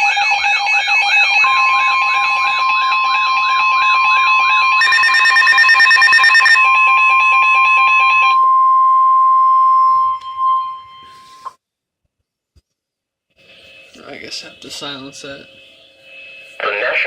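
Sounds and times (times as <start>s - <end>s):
steady warning alarm tone: 0.0s - 11.5s, 13.4s - 17.0s
warbling siren: 0.0s - 11.5s
rapid beeping: 4.8s - 6.7s.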